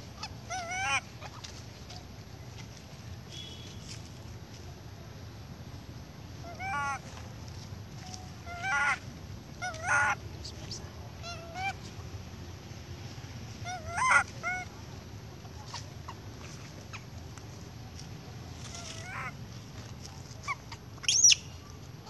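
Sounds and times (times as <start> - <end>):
baby monkey crying: 0.1 - 1.5, 6.4 - 7.0, 8.4 - 11.8, 13.6 - 14.7.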